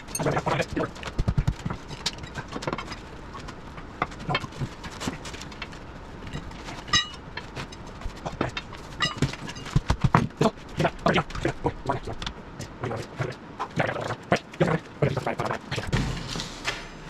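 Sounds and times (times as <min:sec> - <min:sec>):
metal knocks and clanks: 0:06.3 - 0:10.3.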